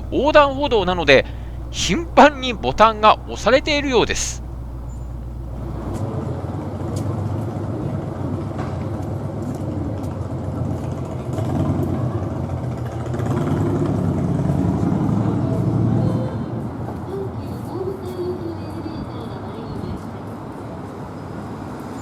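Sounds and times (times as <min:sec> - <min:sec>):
car engines idling and passing: 0:00.0 - 0:06.0
steady traffic rumble: 0:00.0 - 0:06.0.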